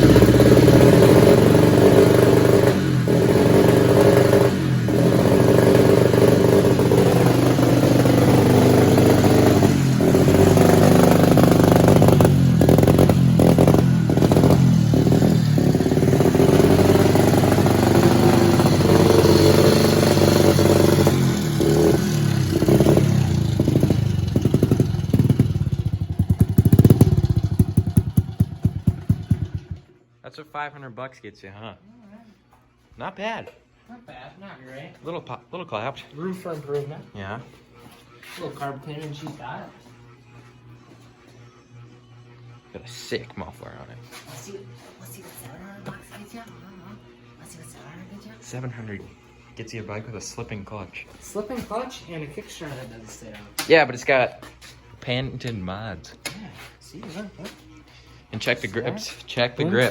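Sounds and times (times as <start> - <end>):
small motorbike engine revving: 0.0 - 29.9.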